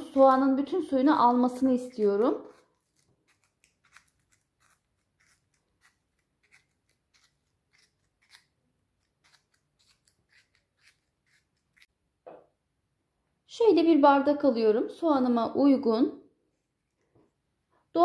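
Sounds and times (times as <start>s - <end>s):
toothpick pricking onion: 0.0s - 11.9s.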